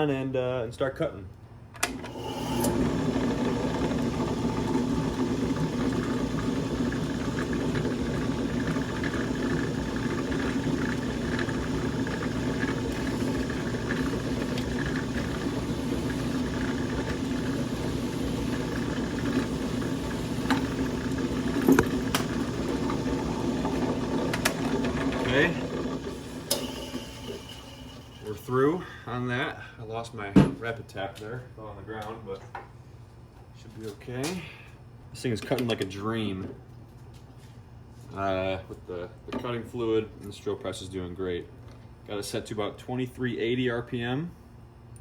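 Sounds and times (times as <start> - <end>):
drill press motor running: 1.8 - 28.5
drill bit cutting metal: 2.1 - 28.4.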